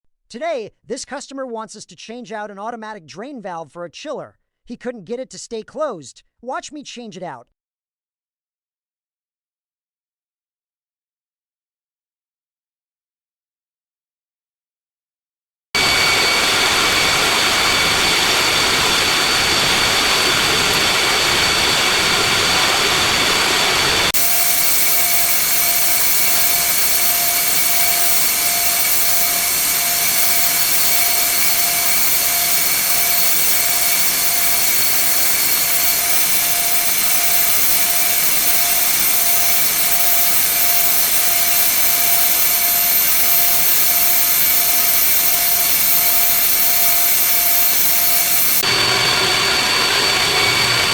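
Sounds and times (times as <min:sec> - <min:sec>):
faint pulsing tone: 0:15.8 - 0:50.9
mechanical drone with hiss: 0:15.8 - 0:50.9.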